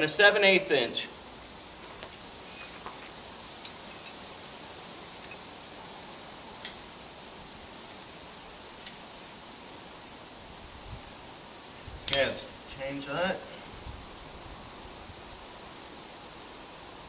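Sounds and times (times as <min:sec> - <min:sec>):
steady background hiss: 0:00.0 - 0:17.0.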